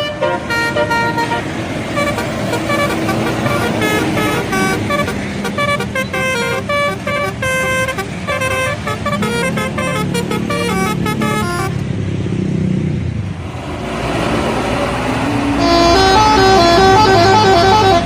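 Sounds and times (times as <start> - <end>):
musical air horn tune: 0.0 - 11.8, 15.5 - 18.0
bus engine running: 0.0 - 18.0.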